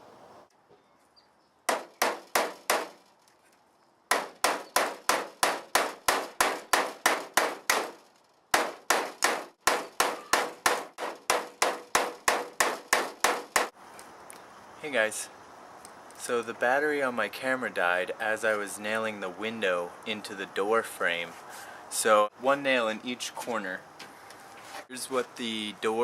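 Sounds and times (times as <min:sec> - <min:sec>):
hammer striking nails into wood: 0:01.7 - 0:03.0, 0:04.1 - 0:13.7.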